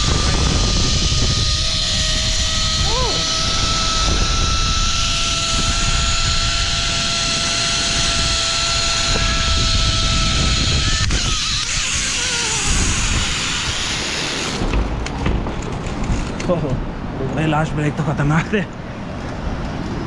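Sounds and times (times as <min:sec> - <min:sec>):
zip-line pulleys whining on cable: 0:00.0 - 0:16.5
rushing wind: 0:00.0 - 0:20.0
brake knocks and rattles: 0:14.2 - 0:16.8.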